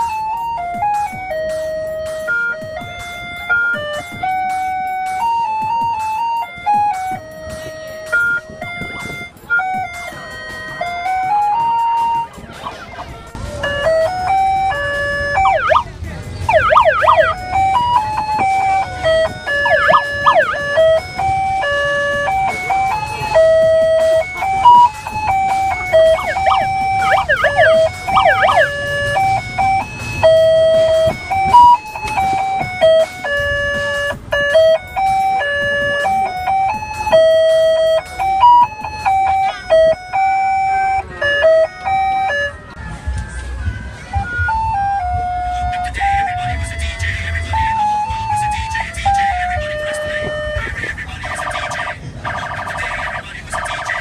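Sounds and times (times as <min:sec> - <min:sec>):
electronic jingle melody: 0:00.0 - 0:12.3, 0:13.6 - 0:15.9, 0:16.5 - 0:42.6
siren-like pitch sweeps: 0:00.0 - 0:15.9, 0:16.5 - 0:42.6.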